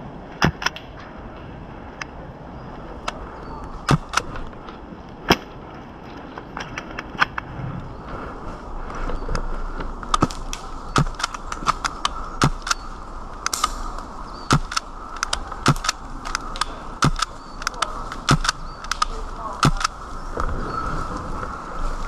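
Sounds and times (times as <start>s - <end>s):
rustling noise: 0.0s - 22.0s
airsoft gun shots: 11.0s - 12.8s, 14.5s - 14.8s, 15.6s - 16.0s, 17.0s - 17.4s, 18.2s - 18.6s.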